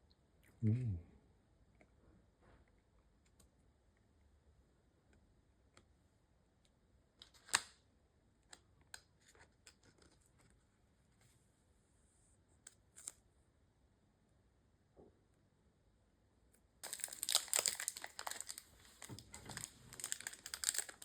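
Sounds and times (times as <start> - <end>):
cards clicking and snapping: 7.2 - 7.8
card pack rustling: 16.8 - 21.0.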